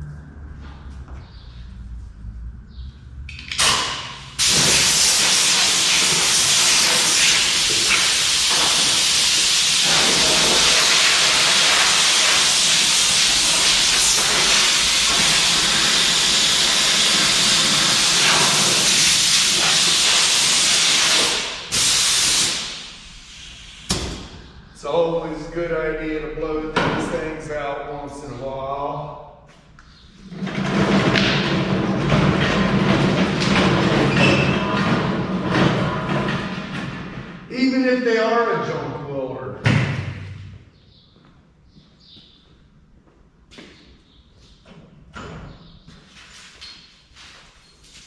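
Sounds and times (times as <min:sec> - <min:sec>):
compressed air blow gun hissing: 0:04.4 - 0:24.0.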